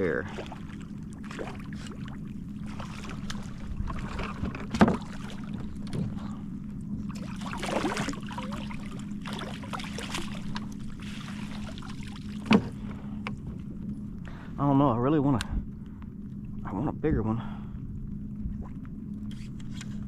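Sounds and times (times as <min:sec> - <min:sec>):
water splashing: 0:00.0 - 0:06.4, 0:07.0 - 0:13.0
steady low hum: 0:00.0 - 0:20.0.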